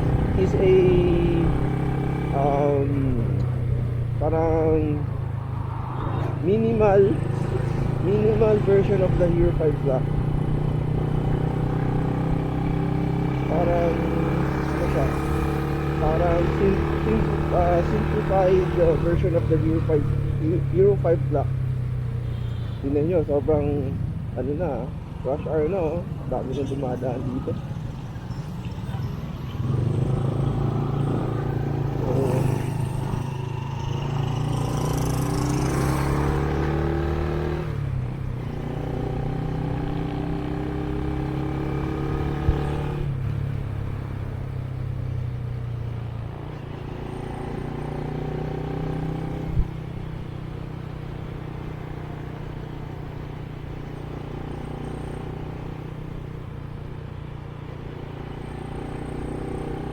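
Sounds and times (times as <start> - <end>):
road traffic engine hum: 0.0 - 59.9
vehicle accelerating by: 27.8 - 45.1.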